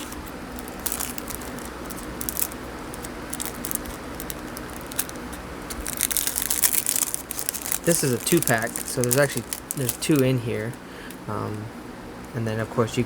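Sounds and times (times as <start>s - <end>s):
plastic packaging clicks and rustles: 0.0s - 11.2s.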